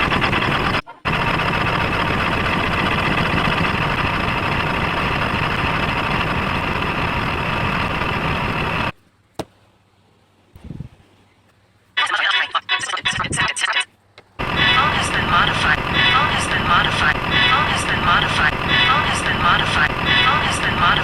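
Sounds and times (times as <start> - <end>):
loud engine-like noise: 0.0 - 8.9, 14.4 - 21.0.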